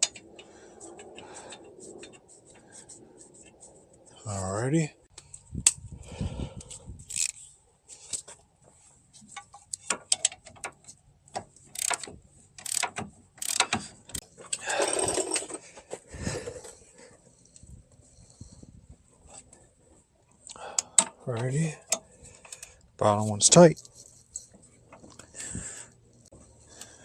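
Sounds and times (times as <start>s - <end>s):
ratchet wrench clicking: 7.0s - 7.4s, 11.7s - 13.9s
ratchet rasping stroke: 7.1s - 7.4s, 11.8s - 13.9s.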